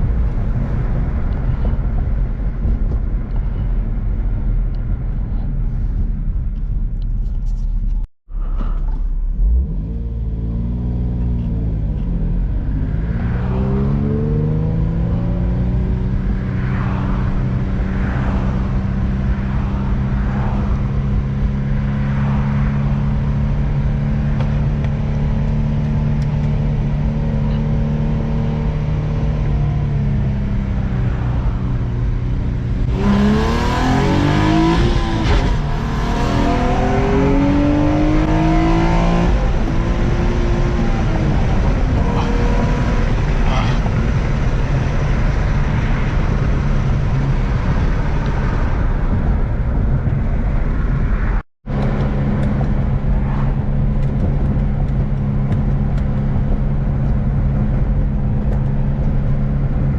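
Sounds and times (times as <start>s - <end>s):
car engine revving: 8.4s - 50.2s.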